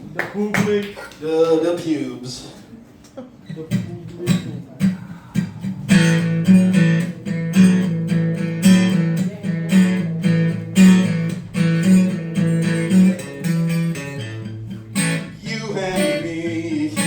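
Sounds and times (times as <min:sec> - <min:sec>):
guitar strumming chords: 0:04.2 - 0:17.0.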